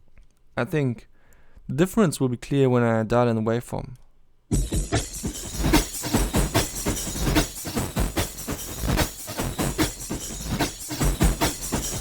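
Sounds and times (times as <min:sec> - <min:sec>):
processed drum loop rapid hits: 0:04.5 - 0:12.0.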